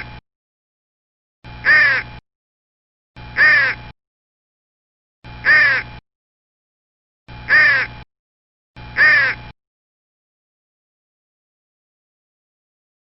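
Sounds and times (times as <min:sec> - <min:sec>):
crow cawing: 0:01.6 - 0:02.1, 0:03.4 - 0:03.8, 0:05.4 - 0:05.9, 0:07.5 - 0:08.0, 0:09.0 - 0:09.5.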